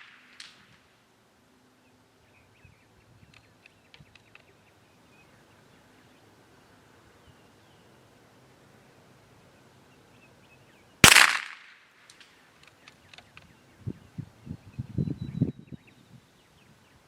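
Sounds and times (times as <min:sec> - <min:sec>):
faint sharp clicks: 0:03.3 - 0:04.5, 0:11.5 - 0:13.5.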